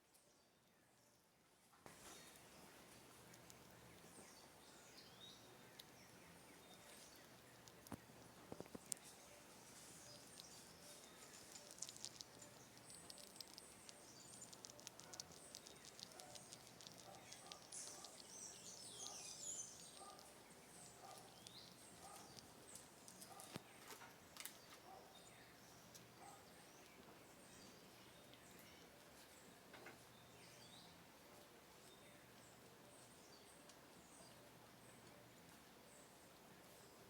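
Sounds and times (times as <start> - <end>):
squirrel gnawing clicks: 3.2 - 4.3, 5.6 - 23.7.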